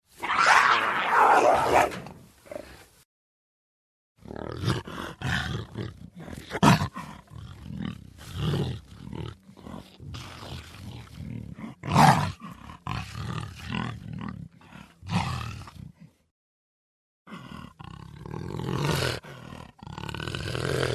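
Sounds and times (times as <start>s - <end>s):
jaguar roaring: 4.2s - 15.9s, 17.3s - 20.9s.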